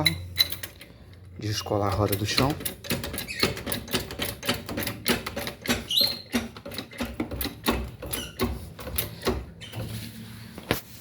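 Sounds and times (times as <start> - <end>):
car jack squeak: 0.0 - 0.8, 2.0 - 10.0
car jack clicking and knocking: 1.9 - 9.6.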